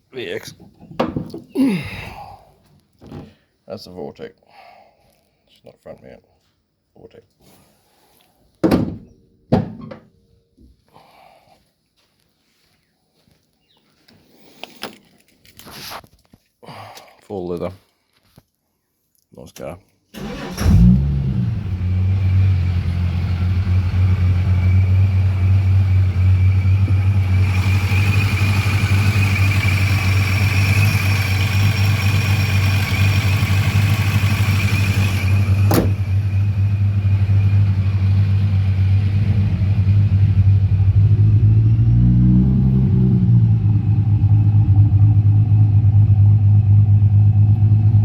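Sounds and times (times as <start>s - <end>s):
car engine starting and idling: 20.2s - 48.0s
supercharger whine: 20.5s - 48.0s.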